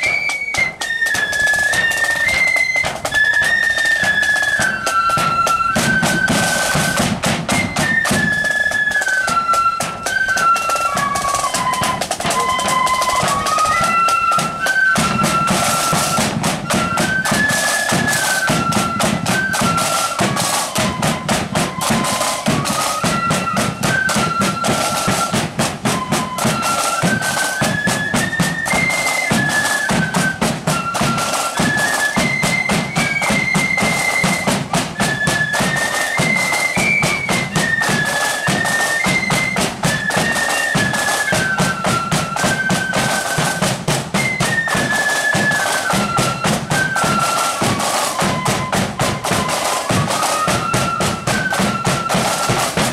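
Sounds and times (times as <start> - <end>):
fast drumming: 0.0 - 52.9
high wind instrument melody: 0.0 - 52.9.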